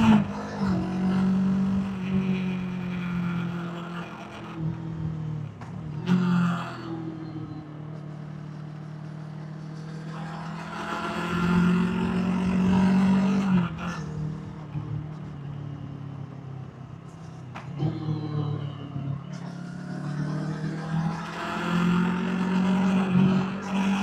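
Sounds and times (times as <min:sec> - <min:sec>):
motorcycle engine and exhaust: 0:00.0 - 0:24.0.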